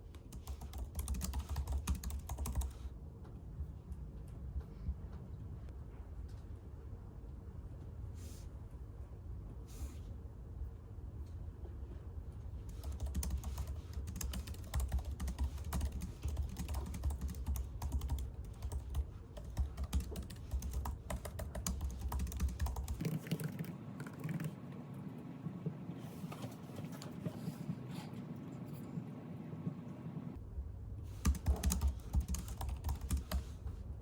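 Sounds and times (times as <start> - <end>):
low background hum: 0.0 - 34.0
typing on computer keyboard: 0.3 - 2.8, 12.7 - 24.6, 31.2 - 33.5.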